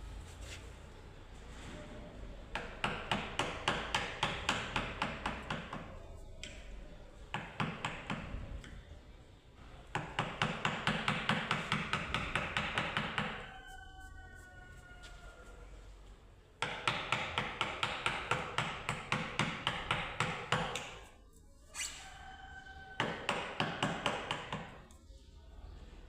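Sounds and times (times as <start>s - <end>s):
mallet striking chisel: 2.5s - 6.5s, 16.6s - 21.0s.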